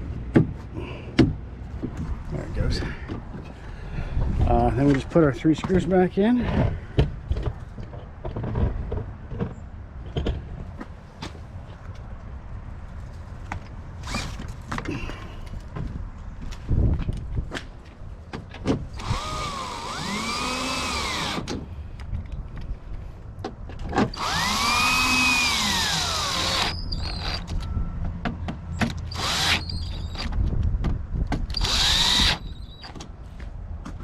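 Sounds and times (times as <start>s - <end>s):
power drill driving screws: 19.0s - 21.6s, 24.1s - 27.4s, 29.1s - 30.3s, 31.5s - 32.6s.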